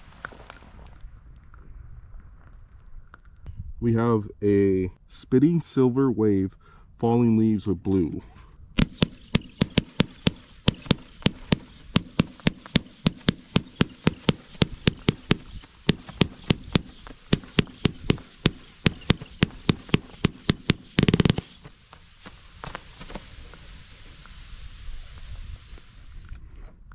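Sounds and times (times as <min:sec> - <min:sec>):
fireworks popping: 0:00.0 - 0:01.7, 0:07.9 - 0:26.6.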